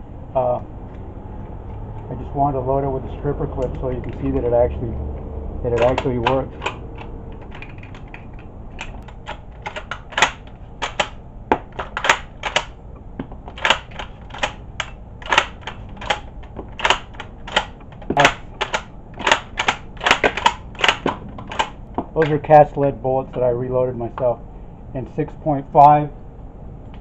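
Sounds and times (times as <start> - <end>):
cartridges clicking into magazine: 5.7 - 12.8, 13.5 - 22.4.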